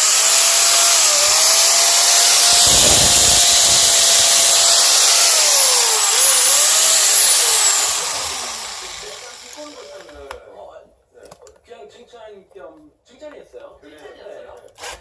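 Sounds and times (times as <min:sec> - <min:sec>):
disc grinder high whine: 0:00.0 - 0:10.1.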